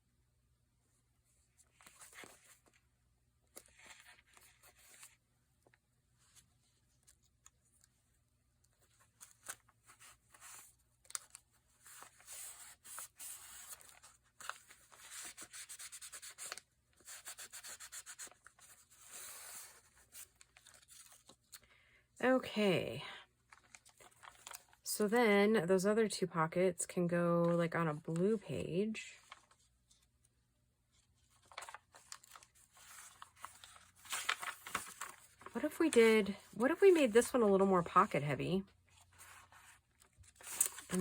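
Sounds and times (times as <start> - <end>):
paper rustling and rubbing: 8.8 - 21.5, 29.2 - 30.1, 30.9 - 37.2, 38.9 - 41.0.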